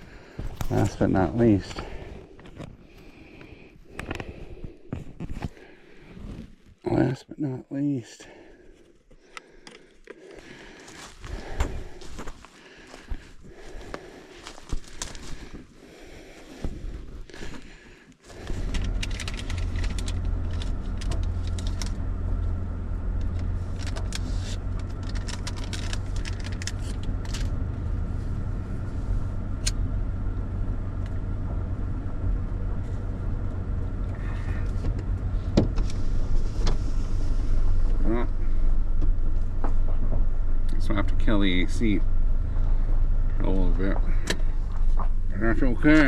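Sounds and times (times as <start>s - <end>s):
car engine idling: 0.0s - 4.8s, 8.2s - 46.0s
small clicks and rustles: 17.2s - 27.6s.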